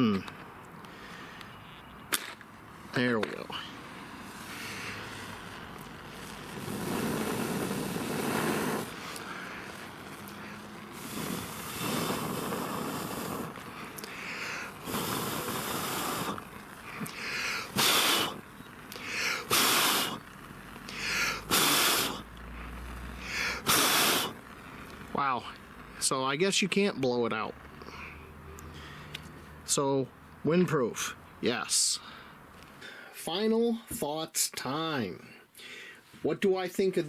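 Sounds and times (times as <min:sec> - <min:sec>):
person blowing on a match: 0:03.6 - 0:26.0.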